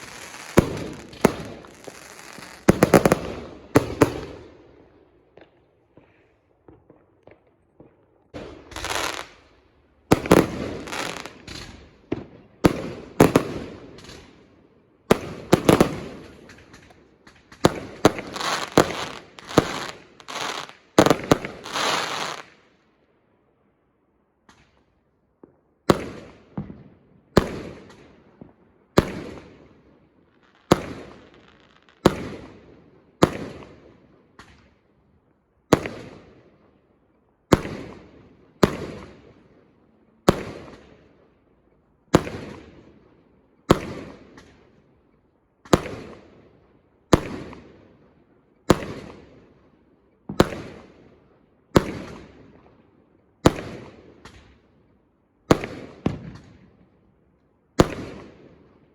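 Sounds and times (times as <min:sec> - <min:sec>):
fireworks banging: 0:00.0 - 0:04.3, 0:06.7 - 0:09.4, 0:10.1 - 0:14.2, 0:15.2 - 0:22.5
small firework pops: 0:00.0 - 0:04.3, 0:05.3 - 0:09.4, 0:10.1 - 0:14.4, 0:15.1 - 0:22.6, 0:24.4 - 0:29.5, 0:34.4 - 0:34.8, 0:43.7 - 0:44.7, 0:45.6 - 0:46.2, 0:53.4 - 0:54.6, 0:55.5 - 0:56.9, 0:57.8 - 0:58.4.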